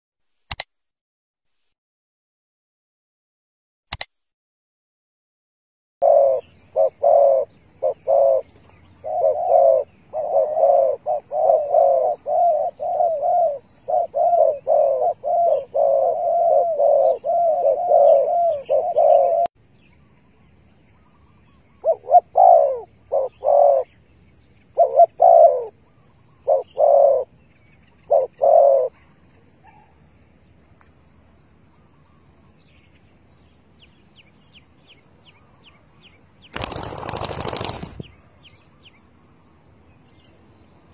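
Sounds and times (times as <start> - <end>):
dove cooing: 6.0 - 19.5, 21.8 - 23.9, 24.7 - 25.8, 26.4 - 27.3, 28.0 - 29.0.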